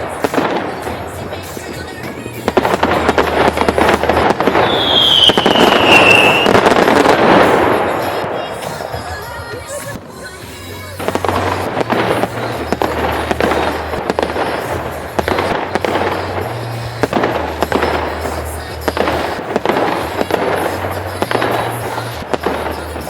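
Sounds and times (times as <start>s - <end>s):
fireworks bangs and crackling: 0.0s - 23.0s
music with deep bass: 0.0s - 23.0s.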